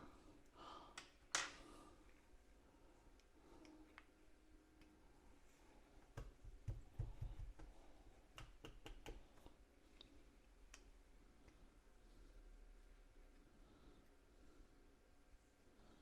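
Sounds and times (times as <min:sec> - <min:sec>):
soft knocks: 0:06.2 - 0:07.8.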